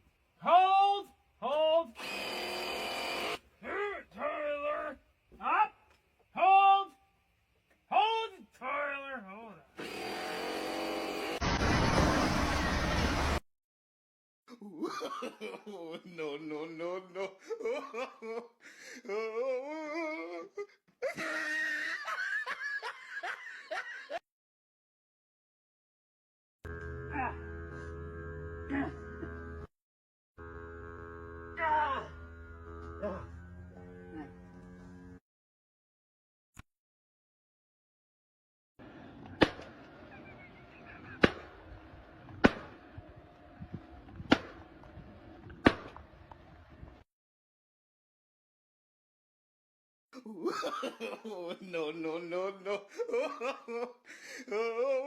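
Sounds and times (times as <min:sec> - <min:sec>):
person laughing: 0:14.5 - 0:24.2, 0:50.2 - 0:51.9, 0:52.5 - 0:55.0.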